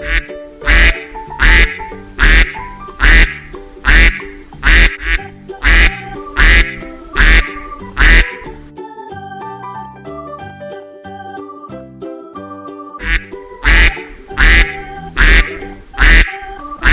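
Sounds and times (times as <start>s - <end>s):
duck quacking: 0.0s - 8.6s, 13.0s - 16.9s
background music: 0.0s - 16.9s.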